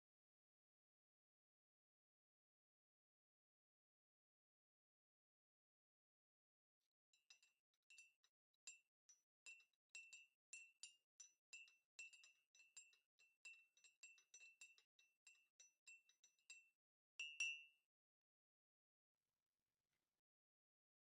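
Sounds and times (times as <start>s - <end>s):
spoon clinking in glass cup: 9.4s - 17.7s.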